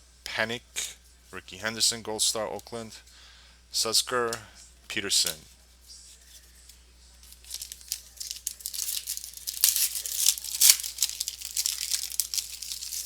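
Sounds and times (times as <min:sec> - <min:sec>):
card pack wrapper tearing and crinkling: 0:07.2 - 0:13.0.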